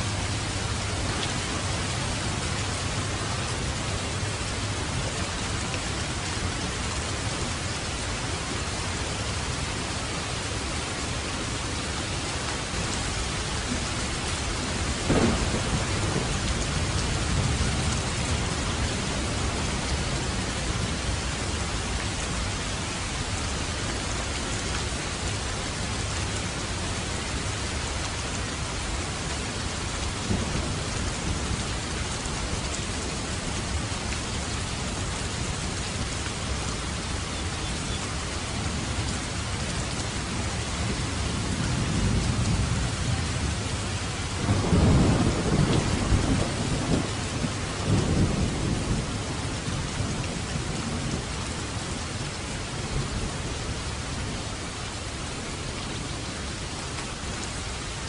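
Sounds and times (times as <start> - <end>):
steady rain: 0.0 - 58.0
thunder crack rumbling: 14.8 - 19.8, 44.4 - 49.1.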